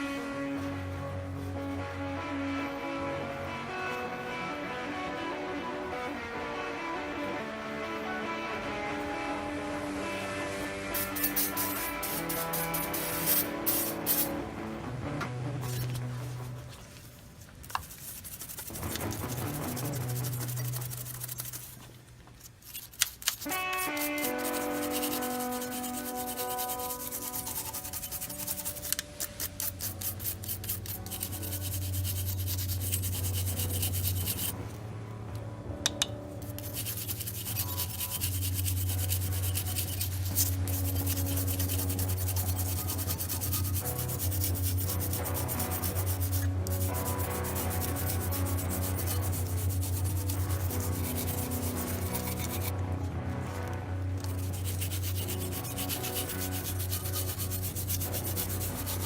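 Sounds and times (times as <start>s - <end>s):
background music with bass: 0.0s - 17.0s, 18.7s - 21.4s, 29.9s - 59.0s
rapid scrubbing strokes: 9.7s - 14.7s, 15.6s - 34.6s, 36.4s - 52.8s, 54.2s - 59.0s.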